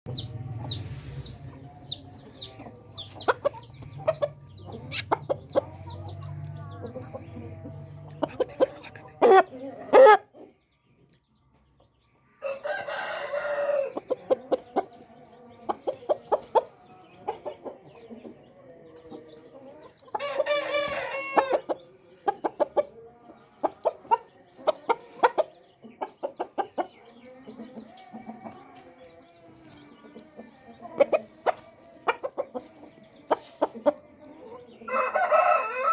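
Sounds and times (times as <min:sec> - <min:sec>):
chickens clucking: 0:00.1 - 0:35.9
roosters crowing: 0:09.2 - 0:10.3, 0:12.4 - 0:14.3, 0:19.6 - 0:21.8, 0:34.5 - 0:35.9.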